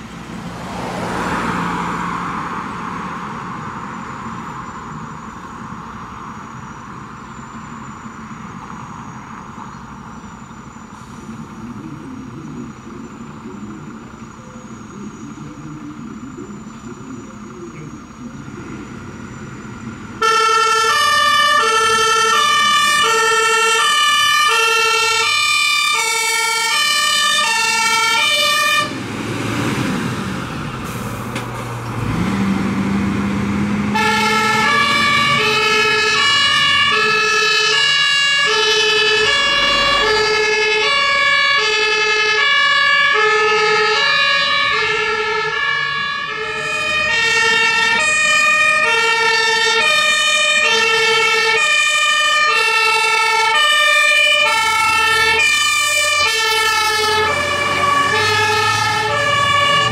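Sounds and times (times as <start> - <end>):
low engine hum: 0.0 - 41.8, 44.2 - 59.9
two-tone fire engine siren: 10.9 - 29.8, 33.7 - 59.9.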